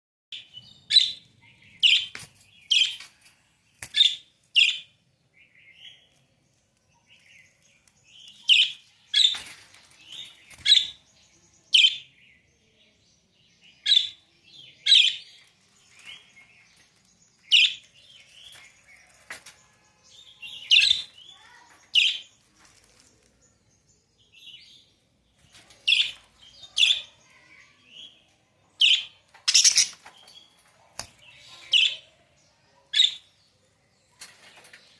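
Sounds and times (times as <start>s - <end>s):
parrots chirping: 28.8s - 30.0s.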